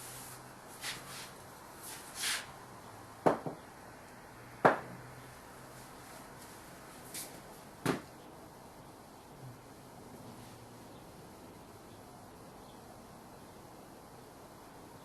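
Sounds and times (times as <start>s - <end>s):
faint steady hum: 0.0s - 15.0s
hard objects knocking: 3.2s - 3.6s.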